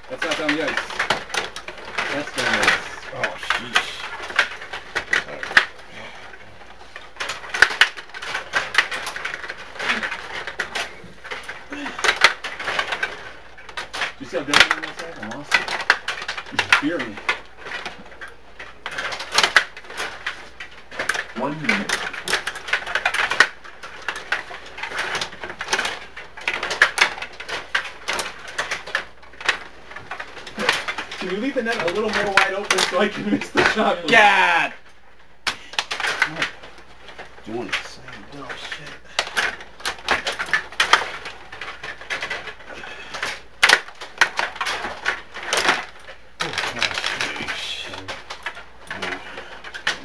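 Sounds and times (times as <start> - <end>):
table hockey puck clattering: 0.0 - 5.9, 6.6 - 50.0.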